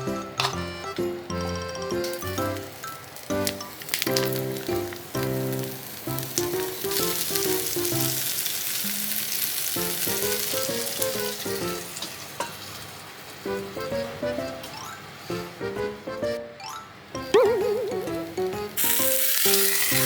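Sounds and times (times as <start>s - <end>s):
background music: 0.0s - 12.0s, 13.5s - 20.0s
food sizzling in a pan: 2.1s - 13.8s, 18.8s - 20.0s.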